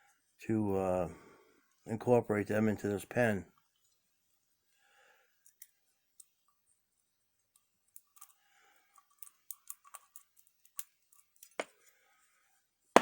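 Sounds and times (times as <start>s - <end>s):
lock picks clicking and tapping: 7.9s - 11.7s.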